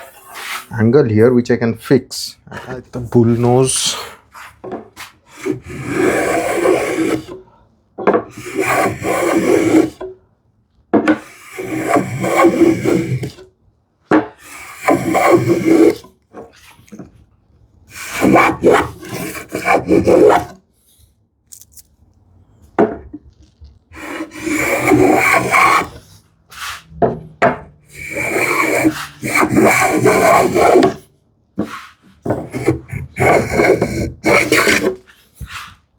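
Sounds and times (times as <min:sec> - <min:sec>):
hand plane shaving wood: 0:00.0 - 0:00.7, 0:03.1 - 0:07.4, 0:08.2 - 0:10.1, 0:11.1 - 0:13.4, 0:14.3 - 0:17.1, 0:17.9 - 0:20.6, 0:23.9 - 0:31.0, 0:31.6 - 0:35.7.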